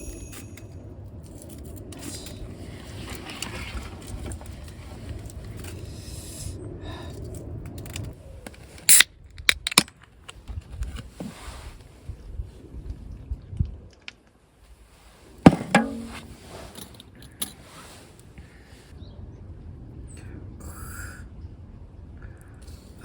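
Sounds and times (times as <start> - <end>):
scraping and rustling of handling: 1.3 - 5.9, 10.4 - 12.0, 14.9 - 18.3.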